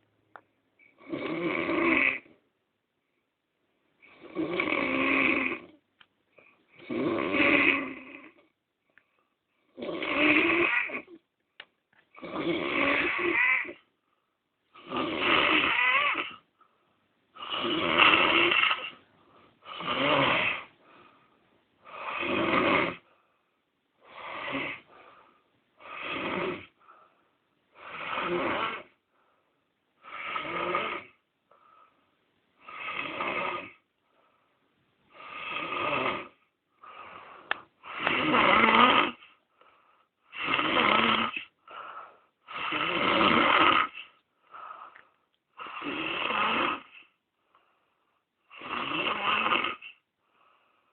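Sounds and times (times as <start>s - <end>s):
man snoring: 0.9s - 2.4s, 4.0s - 5.8s, 6.7s - 8.5s, 9.7s - 11.2s, 12.2s - 13.8s, 14.7s - 16.5s, 17.4s - 19.0s, 19.6s - 20.8s, 21.8s - 23.1s, 24.0s - 25.0s, 25.8s - 26.8s, 27.8s - 29.0s, 30.0s - 31.2s, 32.6s - 33.9s, 35.1s - 39.4s, 40.2s - 44.2s, 45.5s - 47.2s, 48.4s - 50.0s.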